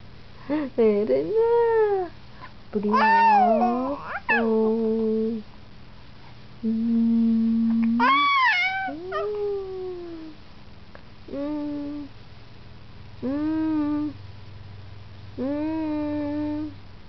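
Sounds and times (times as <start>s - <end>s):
baby squealing and cooing: 2.9s - 4.5s, 8.0s - 10.3s.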